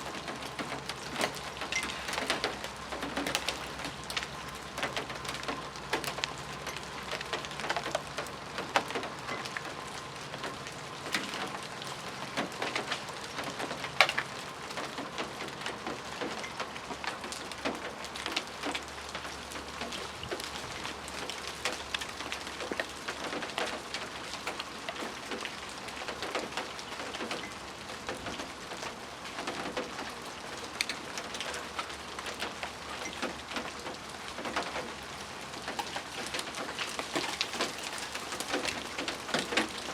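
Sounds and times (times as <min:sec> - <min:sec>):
ice falling from trees: 0:00.0 - 0:18.9, 0:34.6 - 0:39.9.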